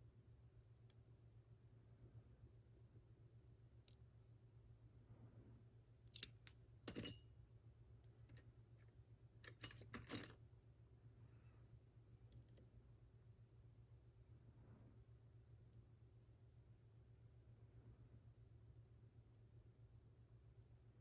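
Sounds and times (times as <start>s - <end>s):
lock-picking tools clicking: 6.1s - 7.2s, 9.4s - 10.3s.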